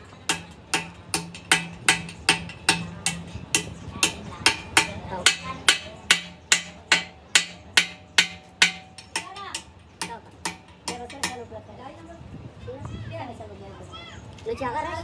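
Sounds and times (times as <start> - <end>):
hammering on metal: 0.2 - 11.6.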